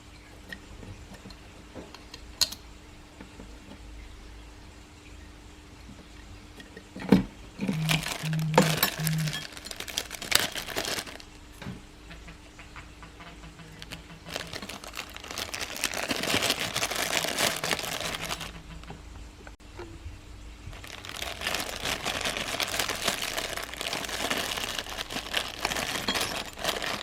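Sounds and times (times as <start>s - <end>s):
rustling: 7.6s - 11.3s, 13.4s - 19.0s, 20.7s - 27.0s.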